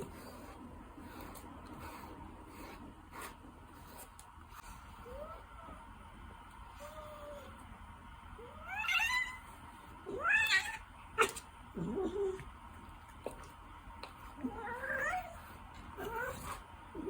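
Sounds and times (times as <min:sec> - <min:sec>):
cat meowing: 0:08.4 - 0:09.4, 0:10.1 - 0:11.4.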